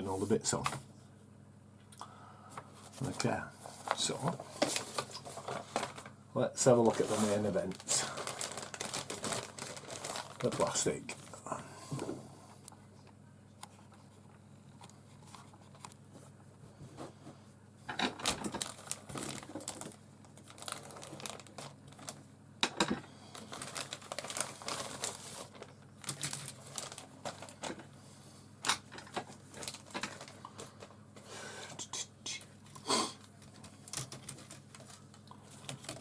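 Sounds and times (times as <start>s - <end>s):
plastic bag crinkling: 3.0s - 11.4s, 18.1s - 22.3s, 23.2s - 27.9s, 28.7s - 31.0s, 32.6s - 36.0s.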